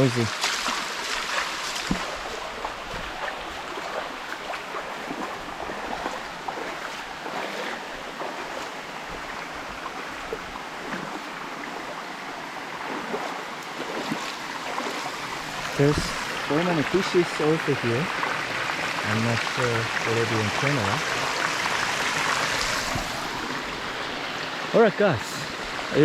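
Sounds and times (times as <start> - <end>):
waterfall rushing over rocks: 14.3 - 26.0.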